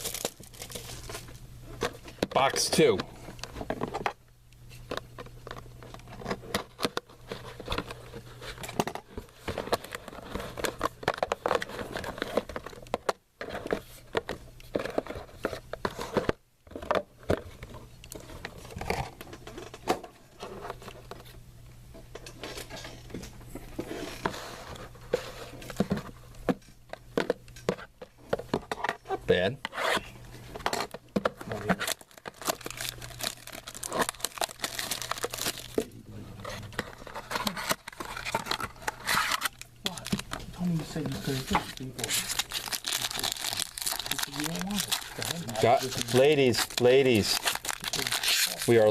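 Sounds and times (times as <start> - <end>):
packaging crinkling and tearing: 0.0 - 1.4, 30.8 - 48.9
cardboard and cards rustling: 0.0 - 21.4, 22.2 - 48.9.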